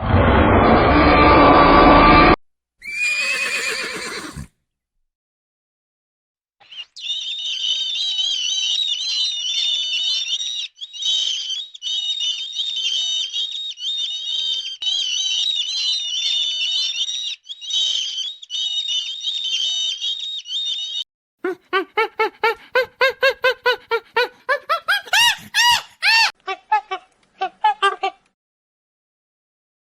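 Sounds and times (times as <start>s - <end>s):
high-pitched animal chirping: 6.6s - 26.9s.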